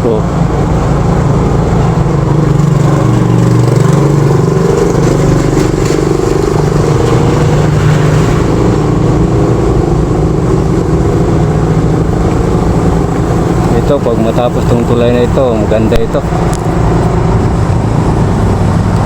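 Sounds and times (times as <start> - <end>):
engine running steadily: 0.0 - 19.0.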